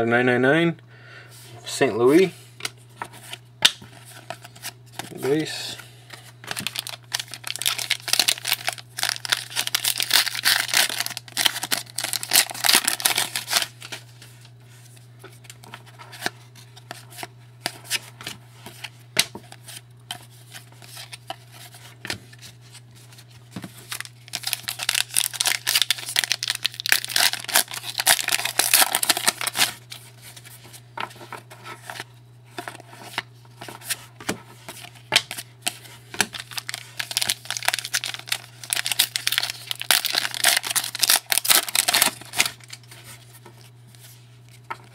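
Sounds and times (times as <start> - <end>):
steady low hum: 0.0 - 44.9
wrappers tearing and crinkling: 6.5 - 14.0, 23.8 - 29.9, 36.2 - 42.9.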